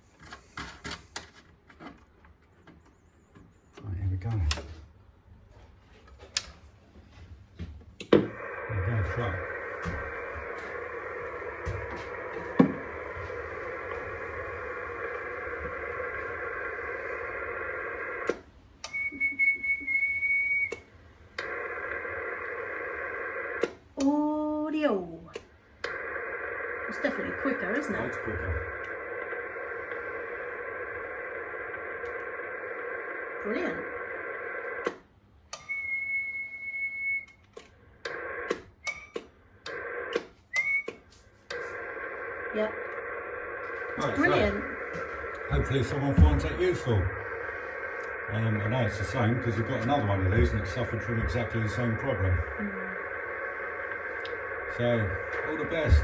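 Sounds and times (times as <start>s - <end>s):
radio receiver hiss: 8.0s - 23.8s, 25.4s - 35.8s, 36.4s - 56.0s
steady high whistle: 18.9s - 20.9s, 35.6s - 37.4s, 40.5s - 41.0s.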